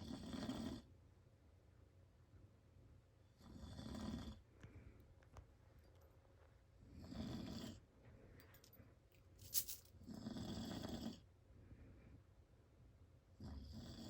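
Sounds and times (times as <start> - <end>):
man snoring: 0.0 - 0.9, 3.4 - 4.4, 7.0 - 7.8, 13.4 - 14.0.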